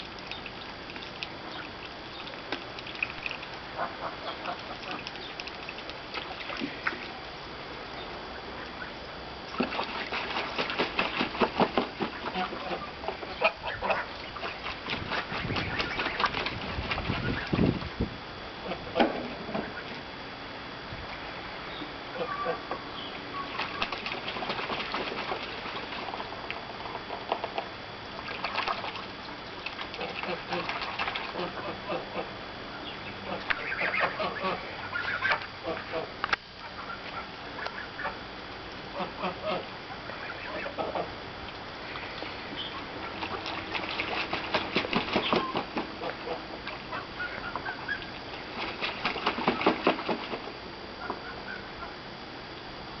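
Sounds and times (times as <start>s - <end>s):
geese splashing in water: 0.0s - 7.2s, 9.5s - 17.7s, 23.3s - 27.2s, 28.2s - 32.3s, 33.2s - 36.1s, 38.9s - 41.1s, 41.8s - 50.5s
soft goose calls: 2.9s - 7.1s, 12.1s - 14.6s, 22.1s - 24.0s, 29.9s - 38.2s, 38.9s - 41.2s, 45.2s - 48.2s.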